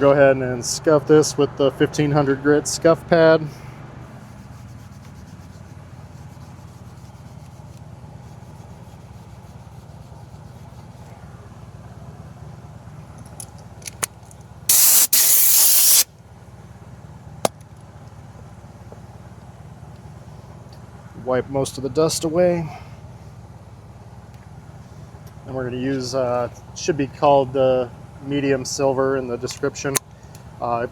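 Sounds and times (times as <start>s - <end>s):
loud hissing spray: 14.7s - 16.1s.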